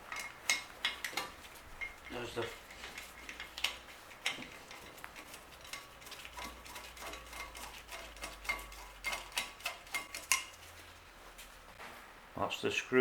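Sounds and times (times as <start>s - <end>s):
metal parts and tools clinking: 0.0s - 11.0s.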